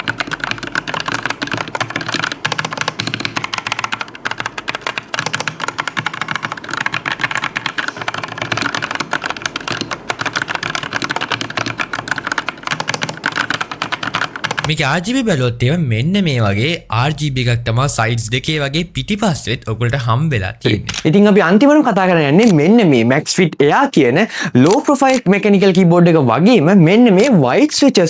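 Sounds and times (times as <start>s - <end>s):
mechanical keyboard typing: 0.0s - 15.1s, 27.0s - 27.4s.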